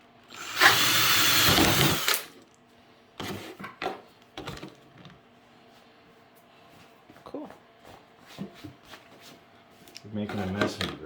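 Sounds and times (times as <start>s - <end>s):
power drill cutting plastic: 0.3s - 2.3s.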